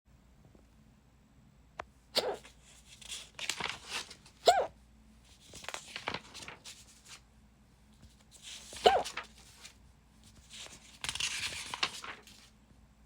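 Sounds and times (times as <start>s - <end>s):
person hiccupping: 2.2s - 2.5s.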